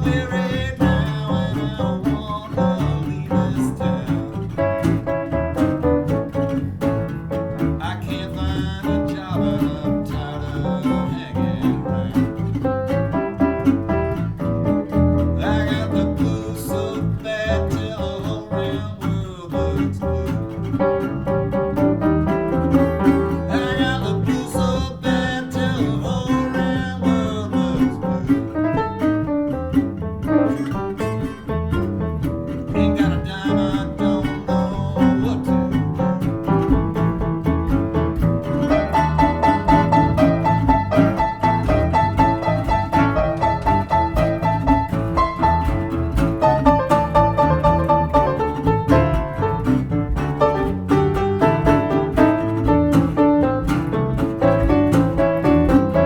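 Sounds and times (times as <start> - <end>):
country blues band playing: 0.0 - 56.0
low bass line: 0.0 - 56.0
plucked strings: 0.0 - 56.0
higher melody line: 36.3 - 56.0.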